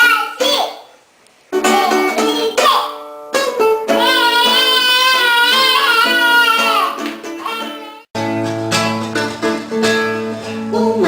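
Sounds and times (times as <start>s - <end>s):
guitar accompaniment: 1.5s - 11.0s
person singing high: 1.6s - 8.1s.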